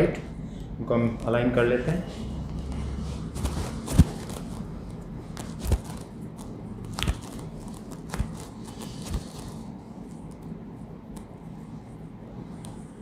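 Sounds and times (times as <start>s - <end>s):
clothing rustling: 2.6s - 6.1s, 6.9s - 9.8s.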